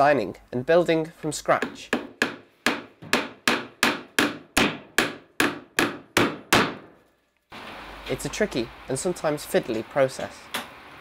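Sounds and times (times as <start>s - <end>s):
hammer striking: 1.6s - 7.0s.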